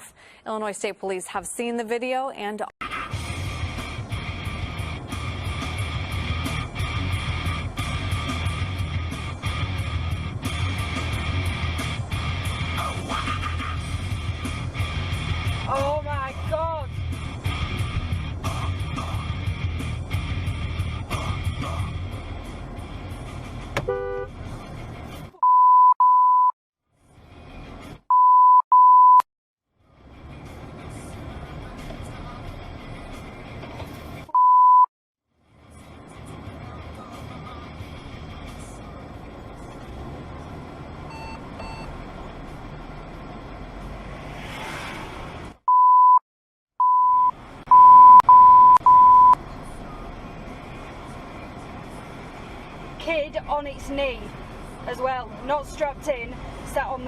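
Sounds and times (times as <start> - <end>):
traffic and road noise: 2.8 - 34.5, 35.3 - 46.2, 46.8 - 57.0
car horn toot: 23.8 - 24.3
censor beep tone: 25.4 - 26.6, 28.1 - 29.3, 34.3 - 34.9, 45.7 - 46.2, 46.8 - 49.4.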